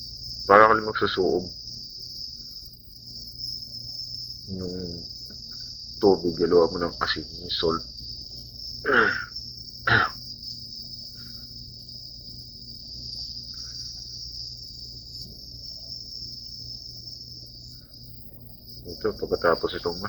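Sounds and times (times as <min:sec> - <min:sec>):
insects chirring: 0:00.0 - 0:20.0
low steady hum: 0:00.0 - 0:20.0
person making short vocal sounds: 0:04.5 - 0:05.0, 0:08.9 - 0:09.3, 0:09.9 - 0:10.1.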